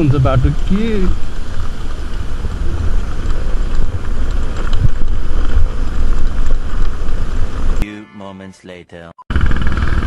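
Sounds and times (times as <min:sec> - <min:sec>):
wind rumble on microphone: 0:00.0 - 0:07.8
road noise: 0:00.0 - 0:07.9
scooter engine: 0:09.3 - 0:10.0.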